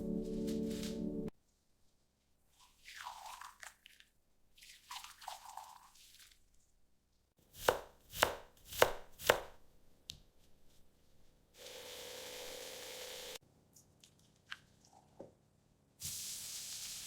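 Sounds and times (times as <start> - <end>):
knife chopping on cutting board: 7.6 - 9.6.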